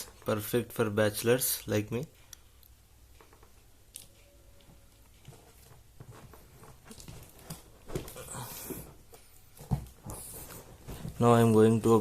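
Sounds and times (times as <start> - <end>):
faint taps and rustles: 4.6 - 11.6.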